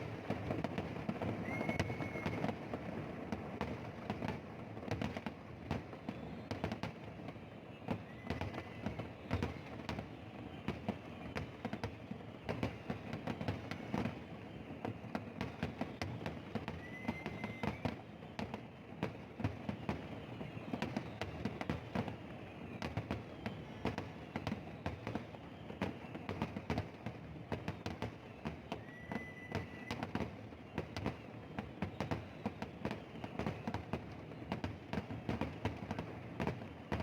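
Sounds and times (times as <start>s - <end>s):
fireworks bangs and crackling: 0.0s - 37.0s
short high whistles: 1.4s - 2.5s.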